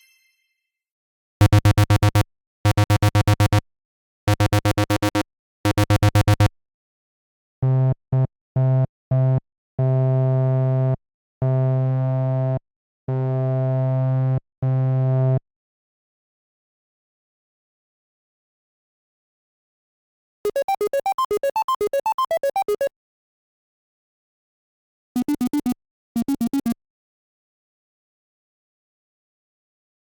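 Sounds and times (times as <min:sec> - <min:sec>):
synthesized telephone trilling ring: 0:20.5 - 0:22.9.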